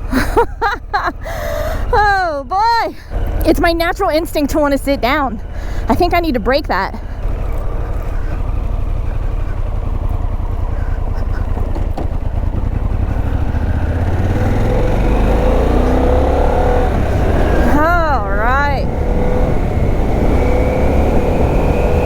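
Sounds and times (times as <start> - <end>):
motorcycle engine running: 0.0 - 22.0.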